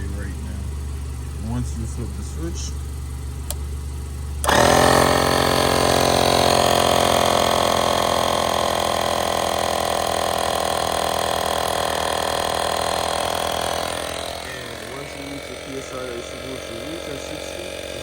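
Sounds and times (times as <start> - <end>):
electric air compressor running: 0.0 - 18.0.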